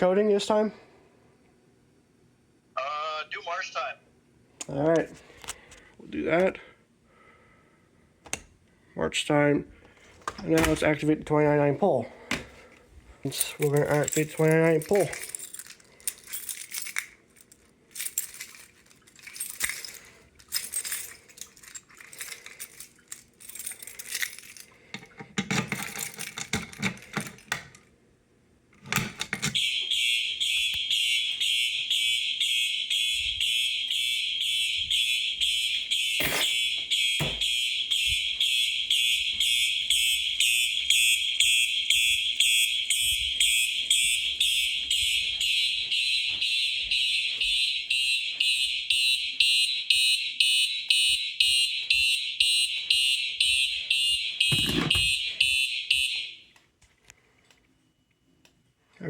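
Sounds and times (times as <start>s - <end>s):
pulsing fire alarm horns: 29.6s - 56.5s.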